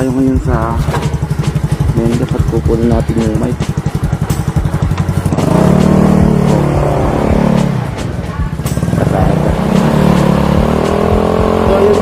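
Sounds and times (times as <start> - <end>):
motorcycle engine pulling away: 0.0 - 12.0.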